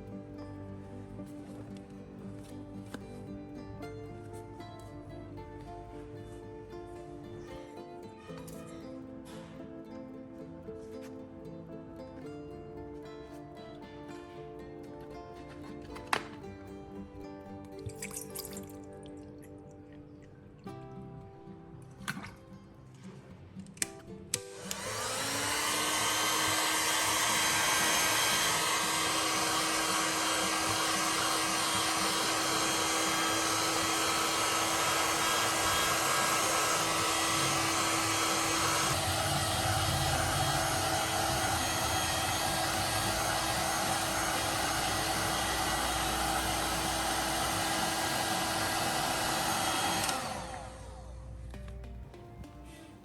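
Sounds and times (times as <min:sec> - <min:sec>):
small electric motor whirring: 0:24.4 - 0:51.3.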